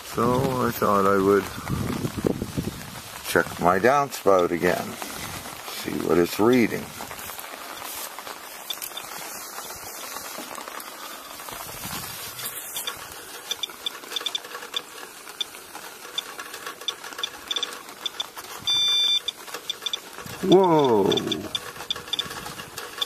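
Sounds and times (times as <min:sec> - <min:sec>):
rain hiss: 0:00.0 - 0:23.0
geiger counter clicking: 0:12.8 - 0:23.0.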